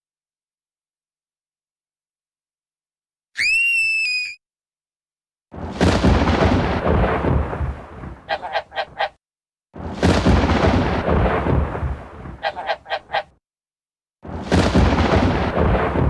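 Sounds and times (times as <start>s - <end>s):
short calls: 3.4s - 4.4s
thunder crack and rumble: 5.5s - 8.4s, 9.8s - 12.9s, 14.2s - 16.0s.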